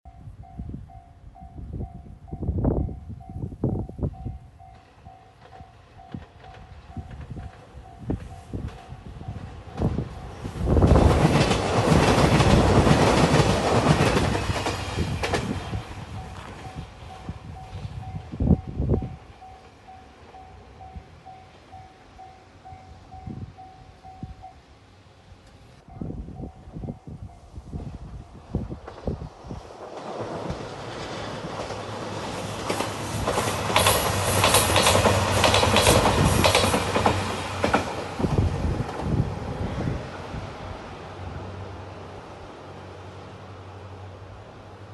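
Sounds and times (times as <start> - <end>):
faint crossing warning bell: 0.1 - 9.6, 16.0 - 24.9, 25.8 - 28.5
train passing: 0.1 - 44.9
wheels clicking over rail joints: 5.3 - 10.0, 10.8 - 17.3, 29.8 - 39.2.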